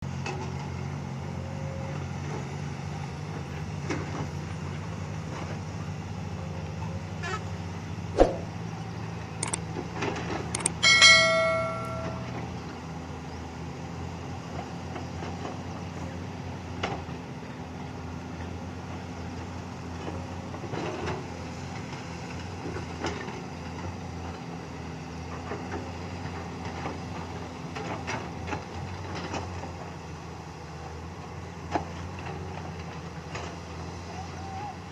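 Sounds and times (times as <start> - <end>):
loud metal clang: 10.8 - 12.4.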